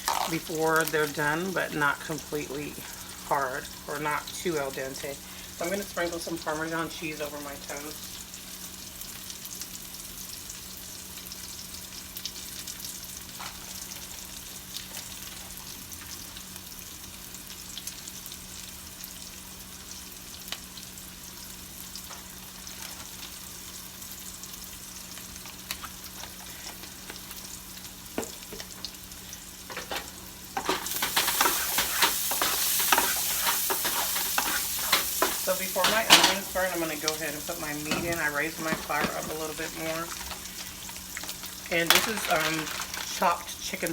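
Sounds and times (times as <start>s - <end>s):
onions sizzling in a frying pan: 0.0s - 43.9s
stirring scraping clicks: 29.7s - 43.2s.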